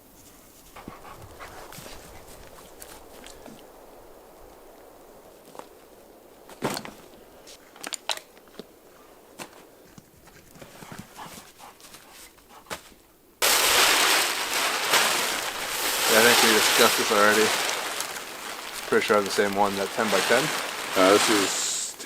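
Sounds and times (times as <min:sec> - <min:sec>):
rain hissing: 0:13.4 - 0:22.0.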